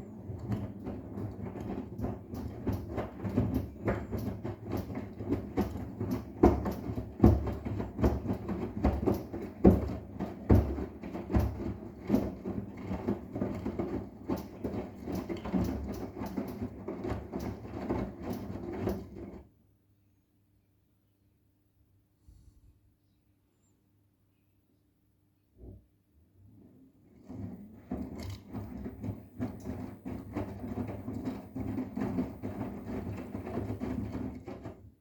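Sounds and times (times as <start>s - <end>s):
washing machine motor hum: 0.0s - 19.4s, 26.4s - 35.0s
washing machine drum thudding: 0.2s - 19.4s.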